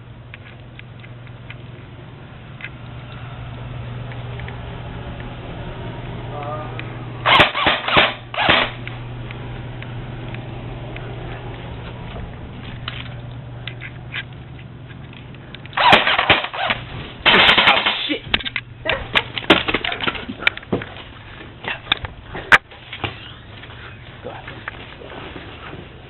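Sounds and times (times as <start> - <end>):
low steady hum: 0.0 - 26.0
airsoft guns firing: 7.3 - 8.8, 15.8 - 18.1.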